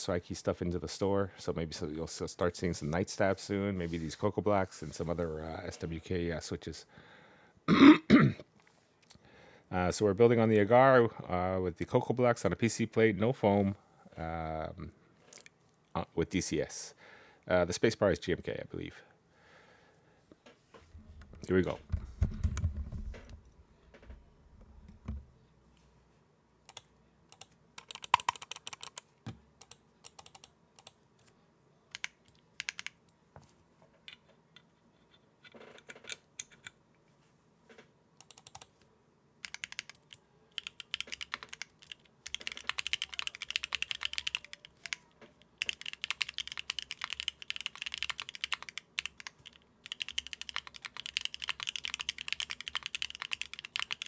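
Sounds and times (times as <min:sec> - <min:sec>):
mechanical keyboard typing: 0:26.7 - 0:29.0, 0:29.6 - 0:31.0, 0:31.9 - 0:33.0, 0:38.2 - 0:38.7, 0:39.4 - 0:54.0.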